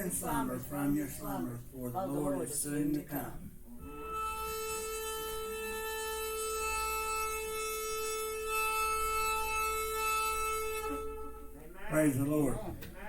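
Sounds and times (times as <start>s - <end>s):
sustained musical note: 3.7s - 11.7s.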